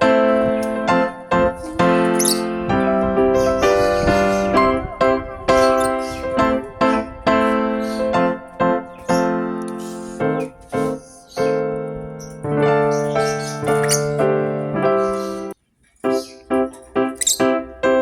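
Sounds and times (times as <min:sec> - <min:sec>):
slow piano music: 0:00.0 - 0:18.0.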